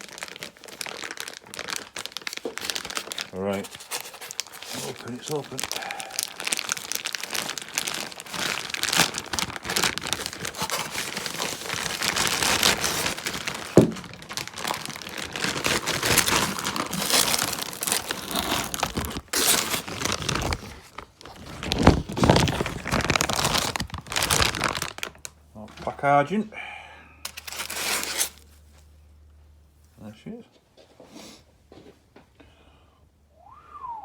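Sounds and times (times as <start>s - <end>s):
packaging crinkling and tearing: 0.0s - 25.4s, 27.2s - 28.8s.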